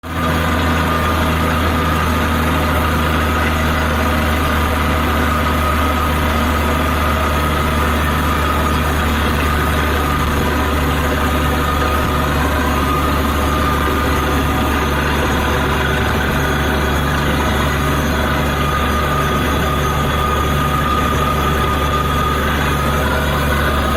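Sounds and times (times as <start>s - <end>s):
drilling rig engine droning: 0.0s - 23.9s
steady whine: 0.0s - 23.9s.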